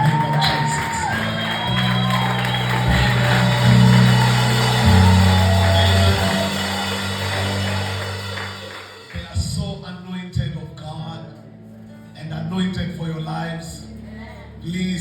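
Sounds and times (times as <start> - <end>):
drums: 0.0 - 9.7
held bass notes: 0.0 - 10.6
live church band music: 0.0 - 15.0.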